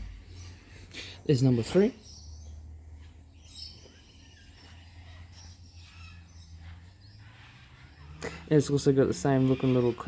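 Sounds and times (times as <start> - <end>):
low hum: 0.0 - 1.1.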